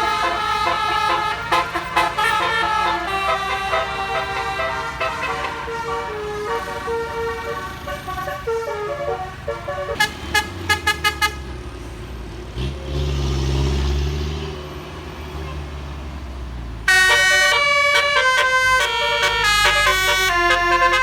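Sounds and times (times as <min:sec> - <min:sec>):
musical bus horn melody: 0:00.0 - 0:11.6, 0:16.9 - 0:21.0
low diesel engine rumble: 0:00.0 - 0:21.0.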